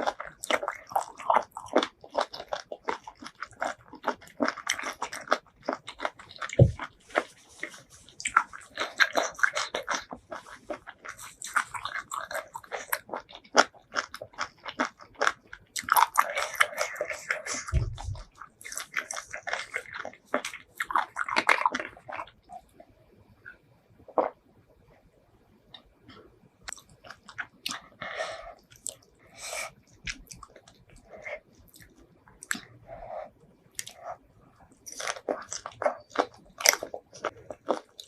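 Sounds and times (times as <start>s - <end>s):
person chewing seafood: 0.0s - 22.7s, 25.7s - 38.0s
low thump: 17.7s - 18.2s.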